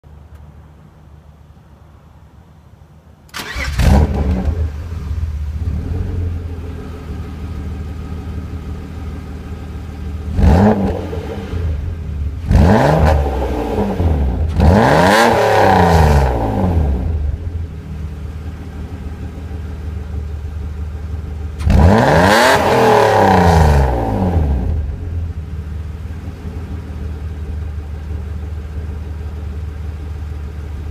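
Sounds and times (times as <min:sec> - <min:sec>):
car engine idling: 0:00.0 - 0:15.0, 0:15.6 - 0:30.9
car engine starting: 0:03.2 - 0:30.9
car engine revving: 0:03.4 - 0:17.6, 0:21.4 - 0:25.3.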